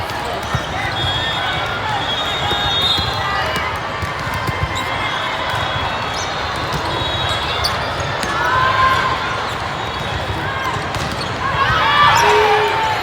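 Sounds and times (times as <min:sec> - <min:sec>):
volleyballs being hit: 0:10.0 - 0:12.6
shoe squeaks: 0:11.2 - 0:13.0.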